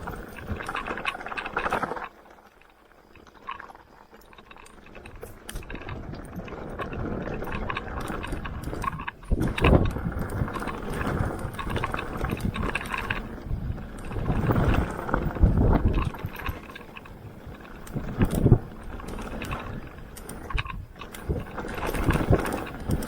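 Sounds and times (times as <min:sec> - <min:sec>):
bike rattling: 0:00.0 - 0:23.0
bike tyres on dirt trail: 0:00.0 - 0:23.0
wind buffeting microphone: 0:05.2 - 0:23.0.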